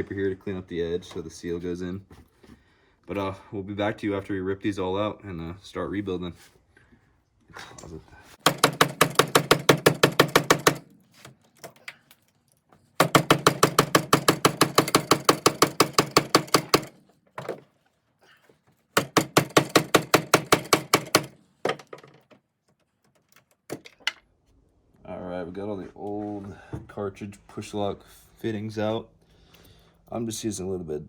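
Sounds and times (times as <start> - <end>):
power tool rattling: 8.4 - 11.0, 13.0 - 17.0, 19.0 - 22.3.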